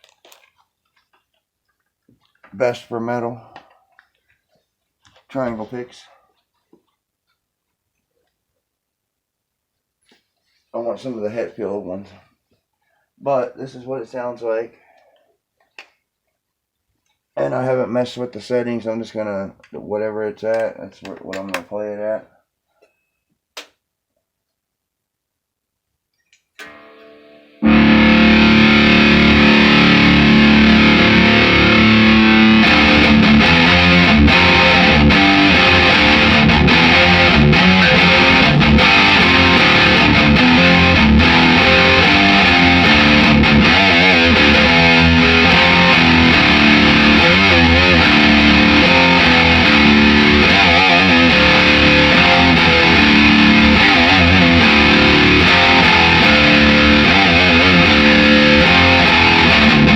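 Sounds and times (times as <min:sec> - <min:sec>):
distorted electric guitar riffing: 0:26.6 - 0:59.9.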